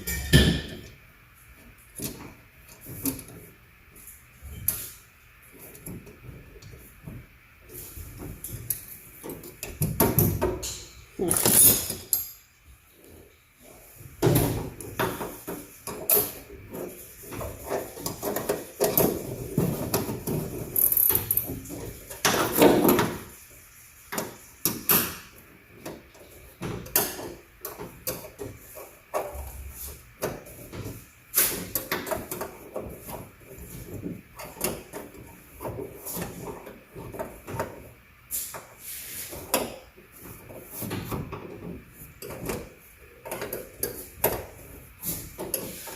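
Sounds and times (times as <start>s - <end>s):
metal parts clicking and scraping: 8.7s - 12.5s, 20.7s - 22.9s.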